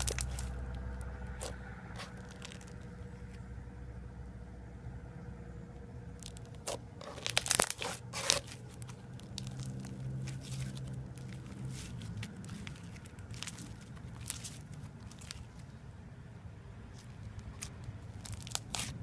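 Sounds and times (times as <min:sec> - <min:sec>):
slime squished by hand crackling: 0:00.0 - 0:02.9, 0:06.2 - 0:15.8, 0:16.9 - 0:19.0.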